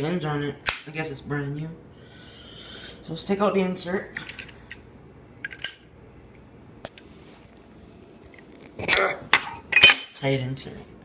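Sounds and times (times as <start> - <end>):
metal ringing clink: 4.2 - 4.8.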